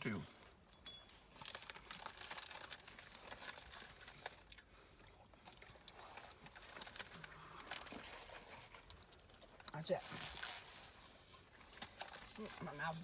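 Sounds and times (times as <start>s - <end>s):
food wrapper crinkling: 1.3s - 13.0s.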